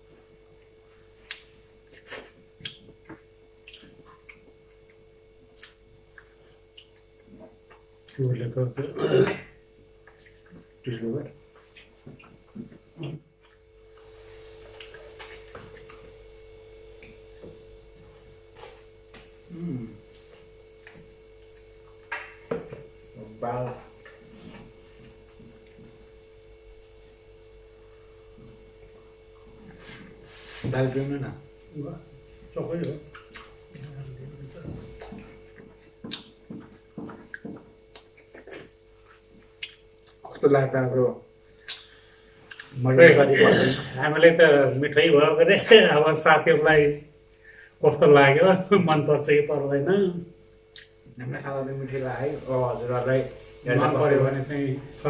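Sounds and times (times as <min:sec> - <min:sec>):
faint steady hum: 0:00.0 - 0:55.0
soft eating smacks and clicks: 0:00.6 - 0:08.4, 0:09.9 - 0:10.8, 0:11.5 - 0:16.2, 0:16.9 - 0:19.4, 0:20.0 - 0:22.1, 0:24.0 - 0:26.0, 0:32.8 - 0:40.4, 0:41.6 - 0:42.8.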